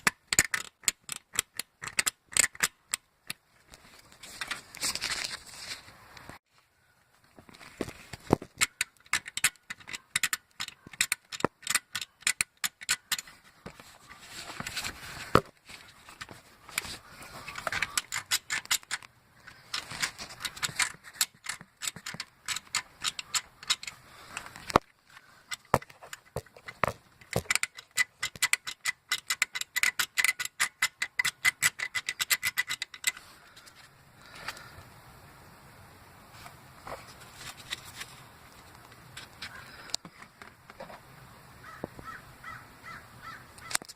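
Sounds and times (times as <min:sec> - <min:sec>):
loose metal bracket rattling: 0:08.4 - 0:13.8, 0:16.0 - 0:24.8, 0:25.5 - 0:33.2.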